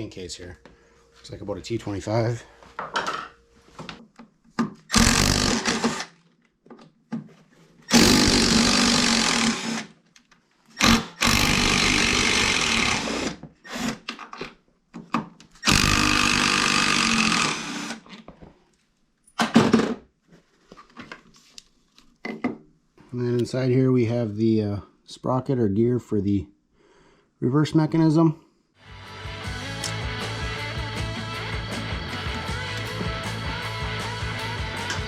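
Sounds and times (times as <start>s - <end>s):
power driver running: 4.9s - 6.1s, 7.9s - 9.9s, 10.8s - 13.3s, 15.6s - 18.0s.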